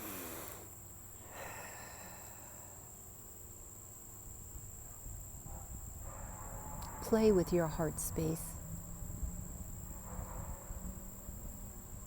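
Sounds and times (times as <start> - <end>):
crickets chirping: 0.0 - 12.0.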